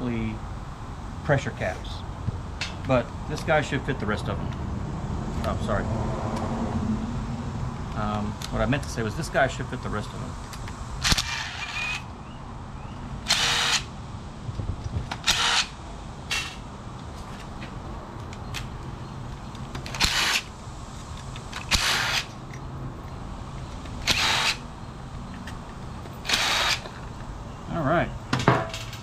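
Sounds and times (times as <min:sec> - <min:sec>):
impact driver running in bursts: 0:13.3 - 0:13.9, 0:15.2 - 0:16.6, 0:20.0 - 0:20.5, 0:21.6 - 0:22.3, 0:24.0 - 0:24.6, 0:26.2 - 0:26.9.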